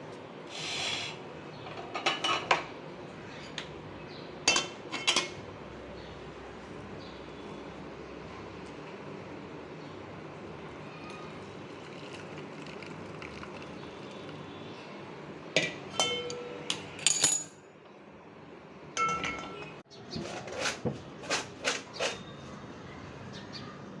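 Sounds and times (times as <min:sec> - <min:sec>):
kitchenware clinking: 0:01.6 - 0:02.7, 0:04.4 - 0:05.4, 0:15.6 - 0:17.7, 0:19.0 - 0:22.3.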